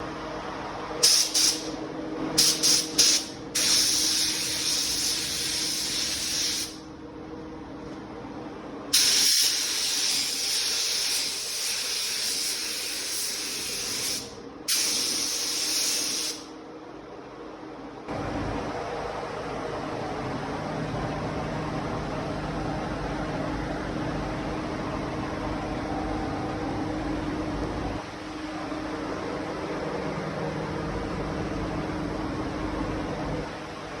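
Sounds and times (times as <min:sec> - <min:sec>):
paint spray gun hissing: 0:01.0 - 0:01.7, 0:02.4 - 0:06.8, 0:09.0 - 0:16.5.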